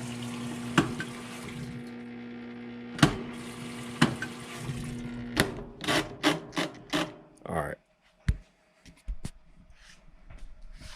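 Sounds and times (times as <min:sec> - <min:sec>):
washing machine electrical hum: 0:00.0 - 0:07.4.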